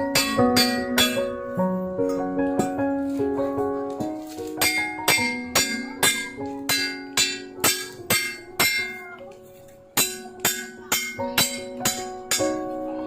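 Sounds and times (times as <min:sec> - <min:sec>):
hammer striking metal: 0:00.0 - 0:01.5, 0:04.1 - 0:12.7.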